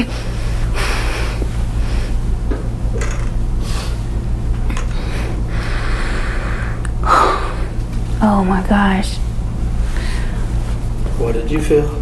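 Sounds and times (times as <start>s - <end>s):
woman breathing hard: 0.0s - 2.2s, 4.8s - 7.8s, 9.8s - 10.6s
steady low hum: 0.0s - 12.0s.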